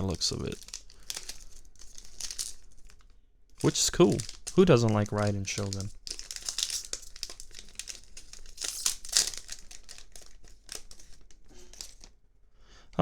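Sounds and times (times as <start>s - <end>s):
plastic packaging crinkling: 0.0s - 12.2s.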